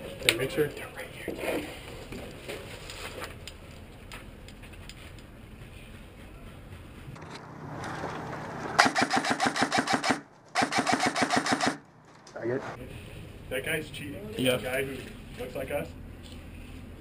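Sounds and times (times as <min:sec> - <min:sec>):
low handling rumble: 0:03.6 - 0:08.8
airsoft rifle full-auto rattle: 0:08.8 - 0:11.8.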